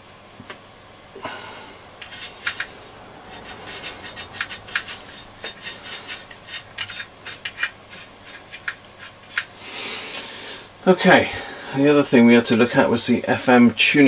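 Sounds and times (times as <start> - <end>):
rubbing and scraping: 1.9 - 9.6
sharp clicks of small parts: 4.2 - 9.5.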